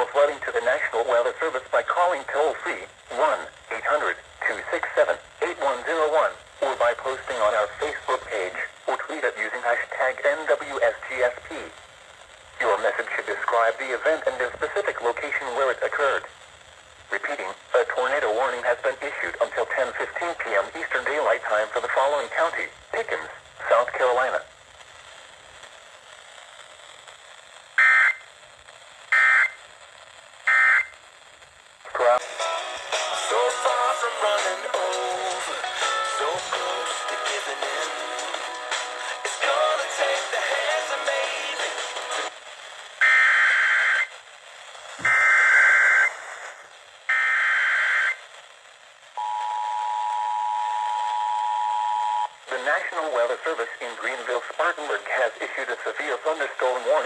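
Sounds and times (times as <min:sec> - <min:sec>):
faint radio hiss: 0:00.0 - 0:57.0
two-tone attention signal: 0:49.2 - 0:52.4.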